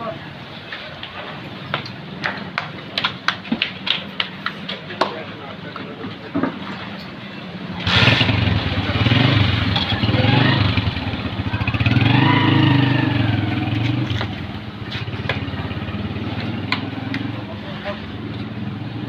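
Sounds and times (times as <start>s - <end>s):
vehicle engine passing: 7.8s - 19.0s.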